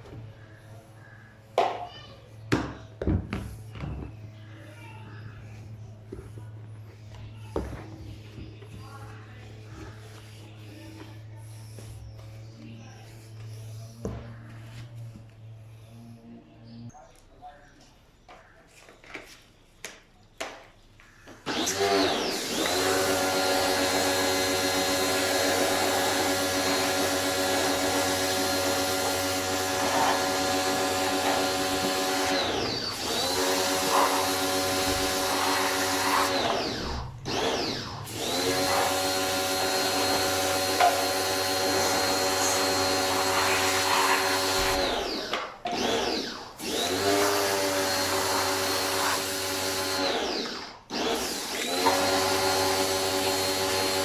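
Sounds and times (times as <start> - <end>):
vacuum cleaner motor whining: 21.5 - 54.0.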